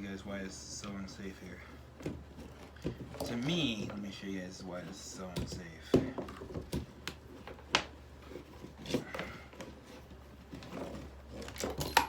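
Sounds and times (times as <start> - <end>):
objects knocking and clicking: 10.5 - 12.0.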